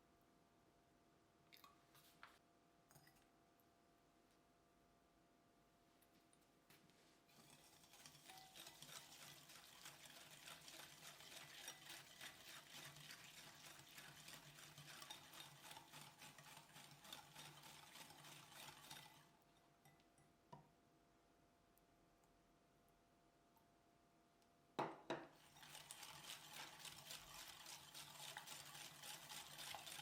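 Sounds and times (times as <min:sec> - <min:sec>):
stirring in mixing bowl: 0:06.9 - 0:20.6, 0:25.1 - 0:30.0.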